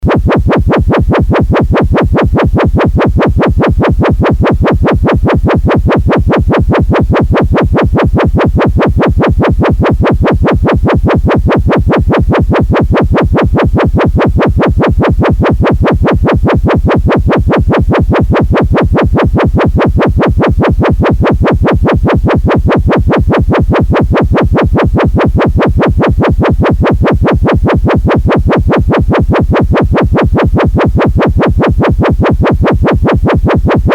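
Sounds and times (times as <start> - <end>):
pulsing electronic alarm tone: 0.0 - 33.9.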